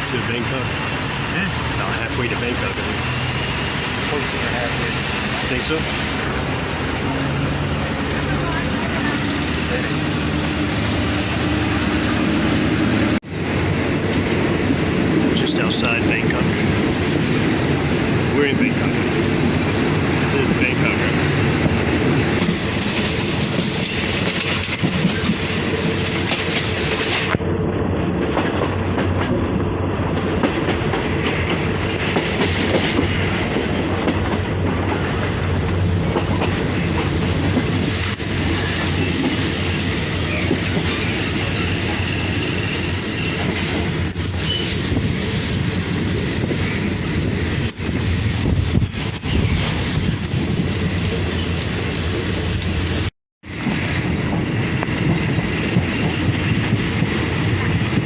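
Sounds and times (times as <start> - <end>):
train rumble and hum: 0.0 - 58.0
wheels clattering over rails: 14.0 - 27.3.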